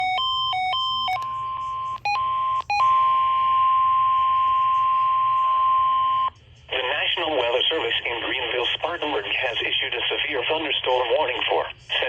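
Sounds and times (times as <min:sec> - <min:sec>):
long warning alarm tone: 0:00.0 - 0:06.3
alternating electronic beeps: 0:00.0 - 0:06.4.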